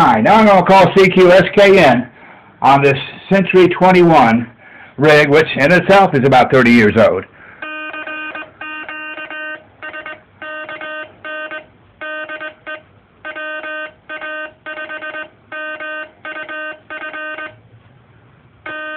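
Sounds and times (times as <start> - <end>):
morse code tone: 7.6 - 17.6, 18.6 - 18.9.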